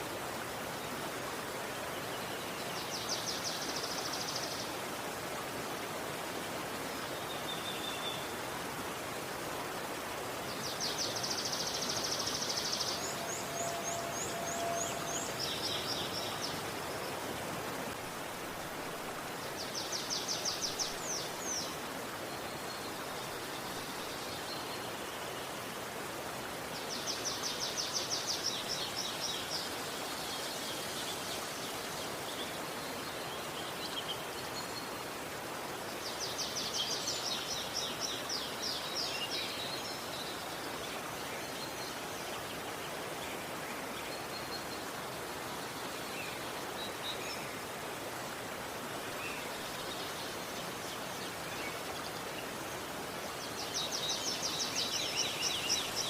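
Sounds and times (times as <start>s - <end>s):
river rushing: 0.0s - 56.0s
faint bird chirps: 11.1s - 16.5s.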